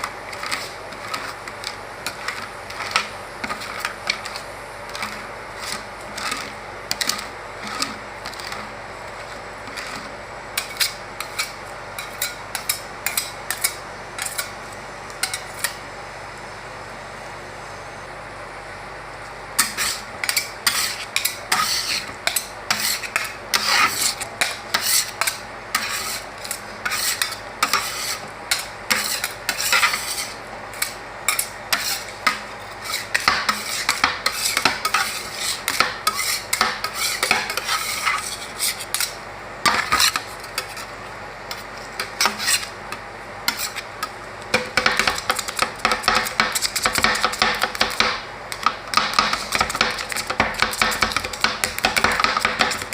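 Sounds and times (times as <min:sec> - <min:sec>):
metal spatulas scraping on steel plate: 0:00.3 - 0:14.5, 0:19.6 - 0:40.9, 0:41.5 - 0:42.7, 0:43.5 - 0:43.9.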